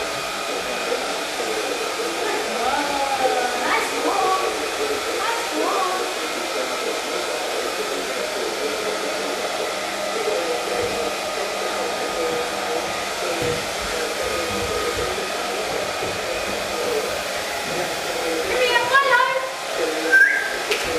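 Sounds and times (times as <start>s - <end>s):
hair dryer blowing: 0.0s - 20.9s.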